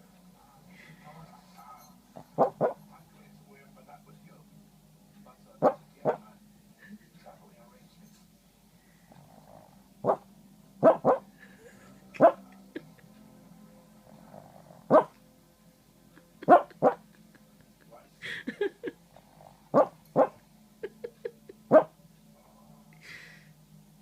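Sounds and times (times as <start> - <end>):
small dog barking: 2.4 - 2.8, 5.6 - 6.2, 10.8 - 11.2, 12.2 - 12.4, 14.9 - 15.1, 16.4 - 17.0, 19.8 - 20.4.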